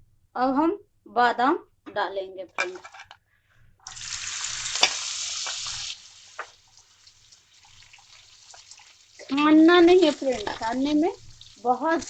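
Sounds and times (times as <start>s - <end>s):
almonds sizzling in hot oil: 3.9s - 12.0s.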